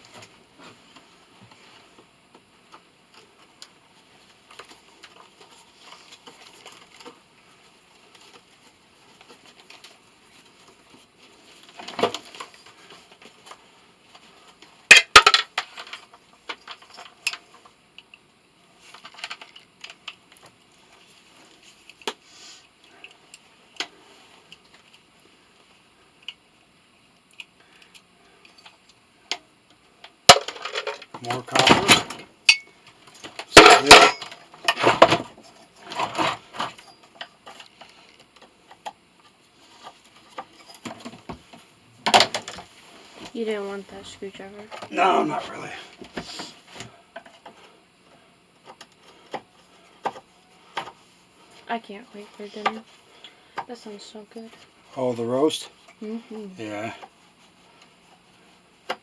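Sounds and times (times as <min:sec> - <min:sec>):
metal tools clinking: 0:33.6 - 0:34.4.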